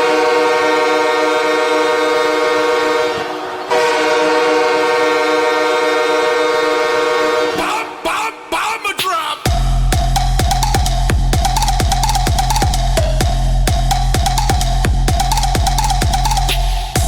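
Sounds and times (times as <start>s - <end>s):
goal horn blasts: 0.0s - 7.7s.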